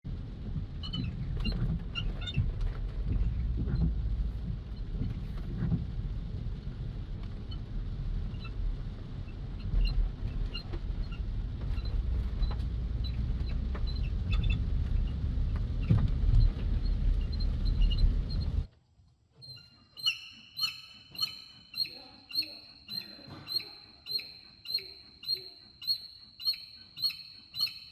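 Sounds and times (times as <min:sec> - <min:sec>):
vehicle low rumble: 0:00.0 - 0:27.9
high-pitched car chirps: 0:19.4 - 0:27.9.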